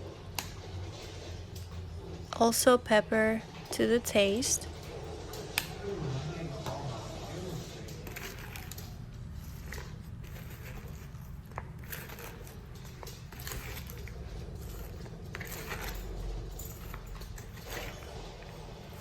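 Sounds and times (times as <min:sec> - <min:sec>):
steady low hum: 0:00.0 - 0:19.0
vegetables crunching and rustling: 0:08.0 - 0:19.0.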